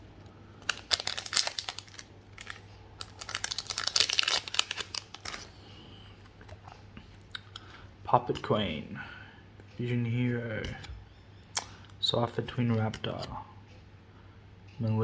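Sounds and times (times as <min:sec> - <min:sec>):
foil wrapper crinkling and tearing: 0:00.6 - 0:05.6.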